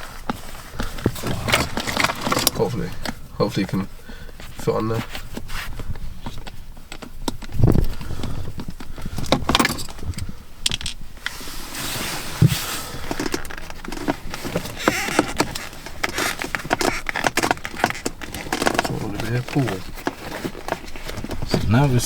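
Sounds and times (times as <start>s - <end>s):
tools clicking and tapping on plastic: 13.1s - 21.5s.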